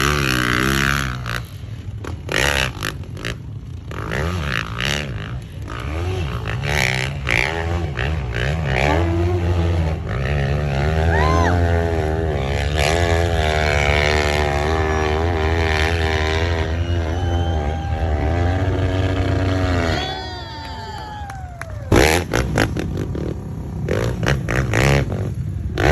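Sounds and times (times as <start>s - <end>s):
motorcycle engine revving: 0.0s - 20.4s, 21.6s - 25.9s.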